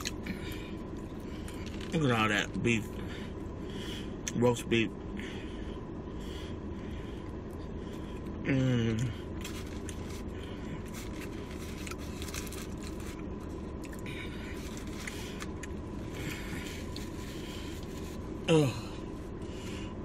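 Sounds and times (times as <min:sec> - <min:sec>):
person chewing food: 0:00.0 - 0:01.9, 0:08.0 - 0:18.0.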